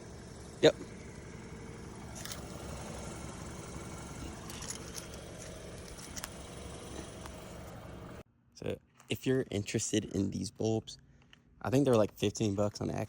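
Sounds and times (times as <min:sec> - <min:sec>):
car engine idling: 0:00.0 - 0:08.2.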